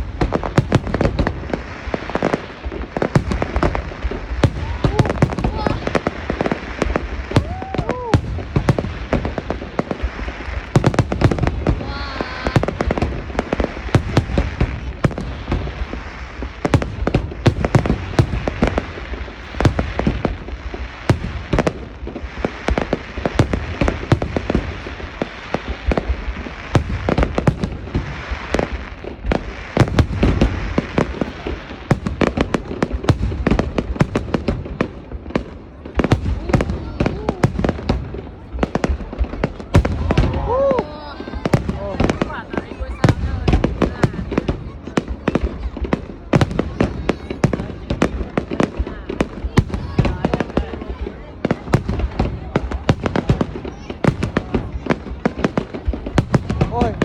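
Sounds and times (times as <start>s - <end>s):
fireworks bursting: 0.0s - 57.0s.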